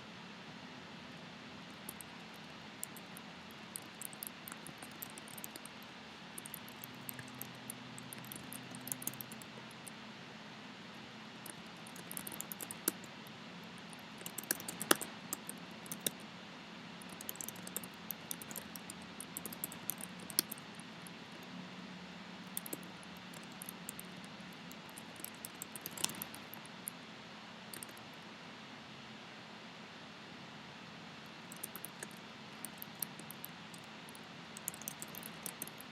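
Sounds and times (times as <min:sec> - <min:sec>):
steady low hum: 0:00.0 - 0:35.9
computer keyboard typing: 0:01.7 - 0:09.9, 0:11.4 - 0:13.1, 0:13.7 - 0:16.2, 0:17.0 - 0:21.5, 0:22.5 - 0:27.0, 0:27.8 - 0:28.0, 0:31.3 - 0:35.9.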